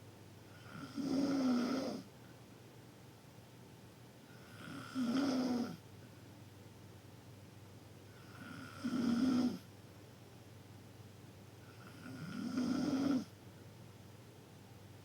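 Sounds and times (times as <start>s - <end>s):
loud snoring: 0.6s - 2.0s, 4.4s - 5.8s, 8.2s - 9.6s, 11.8s - 13.3s.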